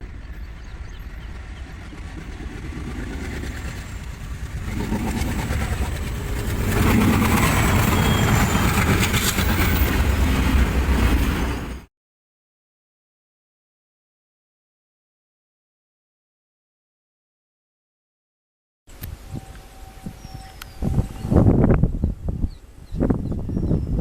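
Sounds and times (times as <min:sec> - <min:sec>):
wheels clicking over rail joints: 0:00.0 - 0:11.8
train rumbling past: 0:00.0 - 0:11.9, 0:19.1 - 0:22.0.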